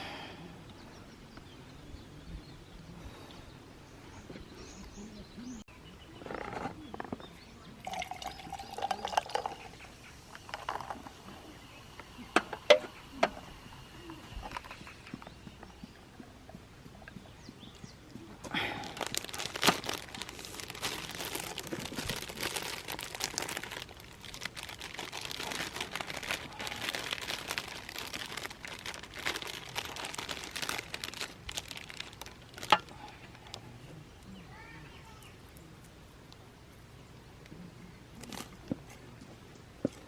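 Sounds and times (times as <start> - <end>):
rustling and crinkling material: 18.5 - 33.6, 38.2 - 39.1.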